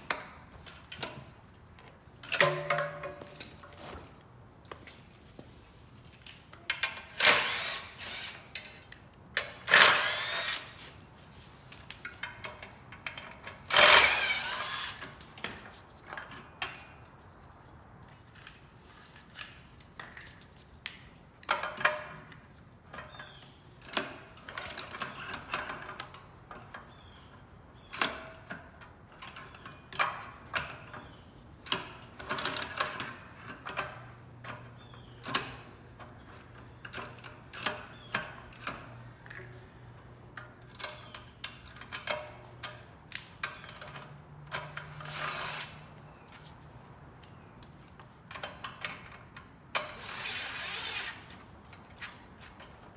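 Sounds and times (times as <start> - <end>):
tools and metal parts clattering: 2.2 - 4.2, 11.8 - 17.0, 27.9 - 46.7, 47.7 - 50.3.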